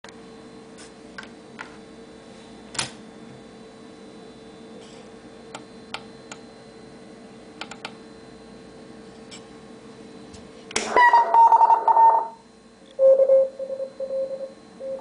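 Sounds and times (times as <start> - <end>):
steady radio tone: 10.9 - 12.4, 13.0 - 15.0.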